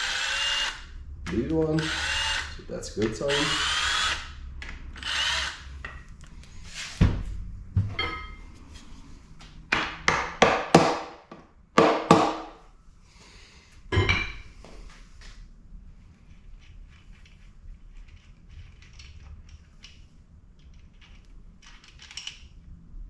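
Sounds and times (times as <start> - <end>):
metallic tool knocks and clinks: 7.9 - 8.5, 13.9 - 14.5.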